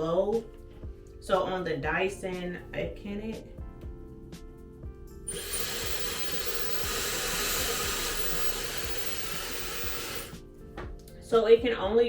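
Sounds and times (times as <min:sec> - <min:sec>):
hair dryer blowing air: 0:05.3 - 0:10.4.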